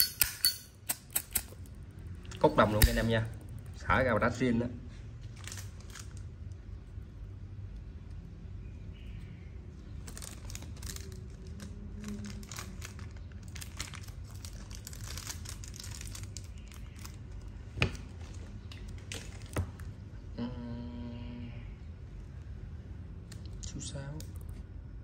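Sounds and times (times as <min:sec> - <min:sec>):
sharp lighter clicks: 0:00.0 - 0:01.6, 0:02.8 - 0:03.1.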